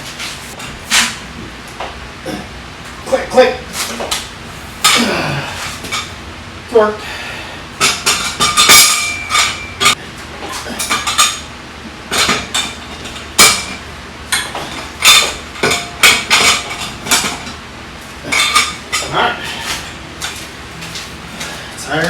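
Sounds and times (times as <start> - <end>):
wrench and lug nuts clinking: 7.8 - 10.0.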